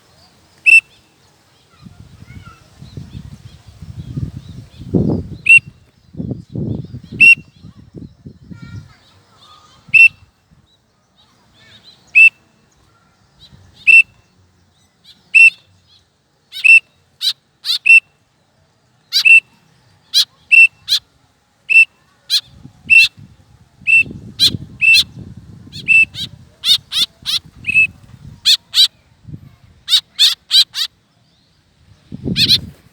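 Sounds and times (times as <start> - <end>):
bird piercing calls: 0.6 - 1.1, 7.1 - 7.6, 9.4 - 10.3, 11.6 - 12.5, 13.4 - 14.2, 15.0 - 18.2, 19.0 - 23.2, 23.8 - 29.0, 29.8 - 31.0, 32.2 - 32.8.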